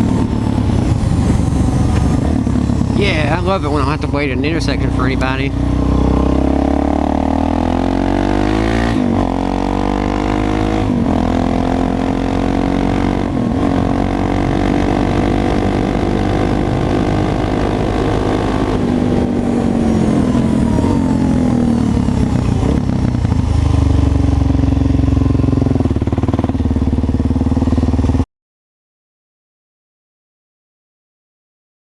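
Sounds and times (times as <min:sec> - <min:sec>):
motorcycle engine revving: 0:00.0 - 0:28.2.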